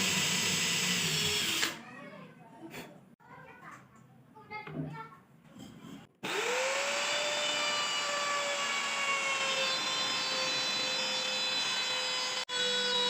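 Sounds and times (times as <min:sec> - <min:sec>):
power tool motor whining: 0:06.2 - 0:13.0.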